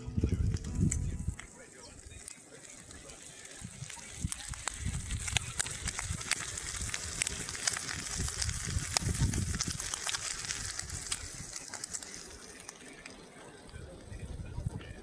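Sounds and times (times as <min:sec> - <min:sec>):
low rumble: 0:00.0 - 0:01.4
food sizzling over campfire: 0:00.0 - 0:15.0.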